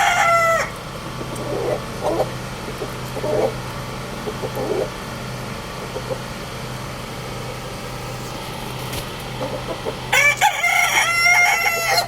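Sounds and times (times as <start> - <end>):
rooster crowing: 0.0 - 0.8, 10.1 - 12.0
chickens clucking softly: 0.0 - 6.6, 9.4 - 12.0
steady low hum: 0.0 - 11.4.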